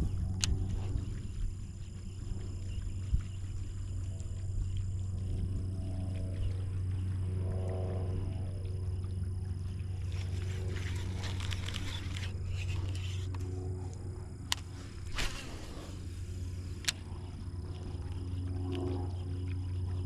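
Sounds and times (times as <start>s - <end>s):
steady low hum: 0.0s - 20.0s
rustling: 10.1s - 13.5s, 14.6s - 16.8s.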